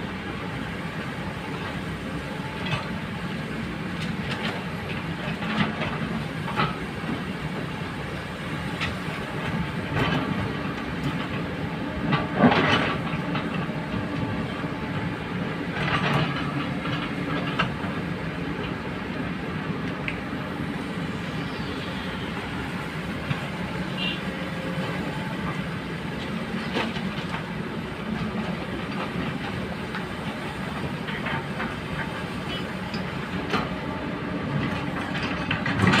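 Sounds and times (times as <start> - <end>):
diesel engine running: 8.0 - 36.0.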